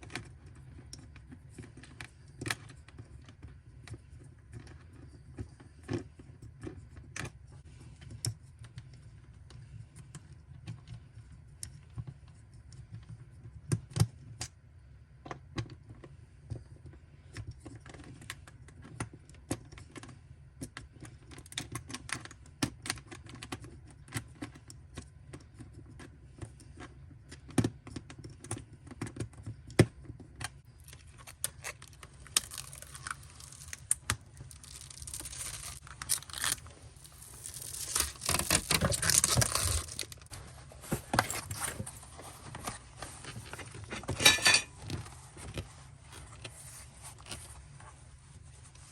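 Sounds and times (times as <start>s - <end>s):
low steady hum: 24.4s - 48.9s
packing material rustling: 30.8s - 48.9s.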